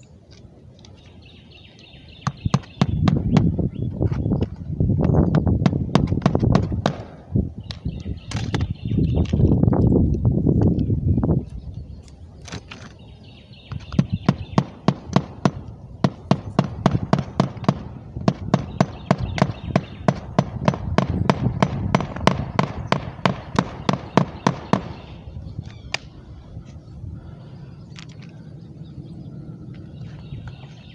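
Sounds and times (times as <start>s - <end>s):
rapid sharp knocks: 5.6s - 7.2s, 14.2s - 25.1s.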